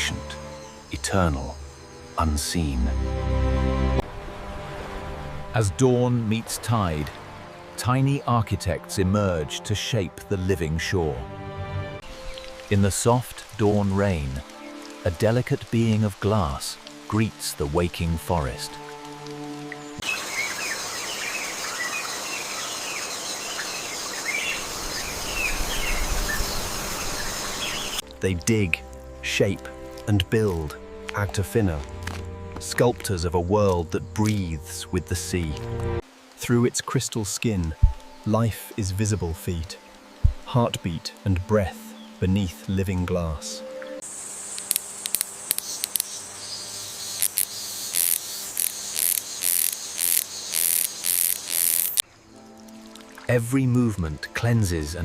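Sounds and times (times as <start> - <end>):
high-pitched insect hum: 0.0 - 3.1, 44.0 - 52.7
insects droning: 0.0 - 5.6, 12.0 - 42.3, 42.9 - 55.0
sharp insect clicks: 44.0 - 52.0
rhythmic high-pitched insect chirps: 44.1 - 52.0.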